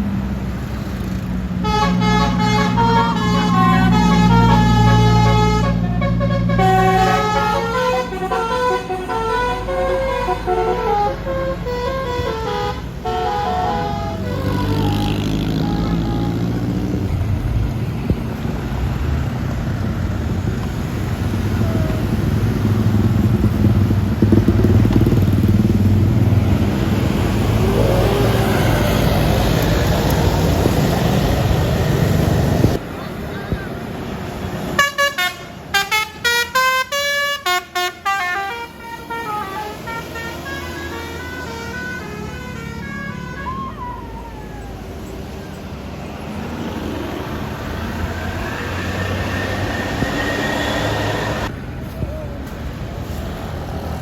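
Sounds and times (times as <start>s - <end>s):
bus engine running: 0.0s - 54.0s
musical bus horn playing a tune: 1.6s - 17.0s, 34.8s - 43.6s.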